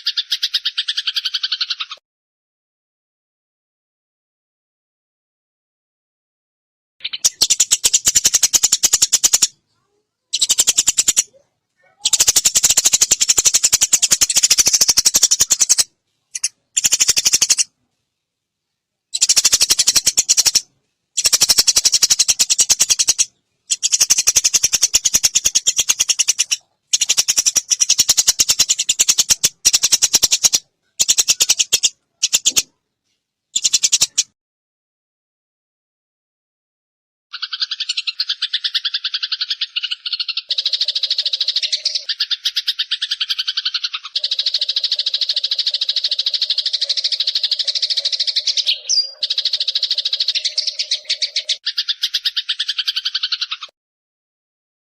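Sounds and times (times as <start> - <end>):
sparrows chattering: 0.0 - 2.0, 7.0 - 17.7, 19.1 - 32.8, 33.6 - 34.3, 37.3 - 53.7.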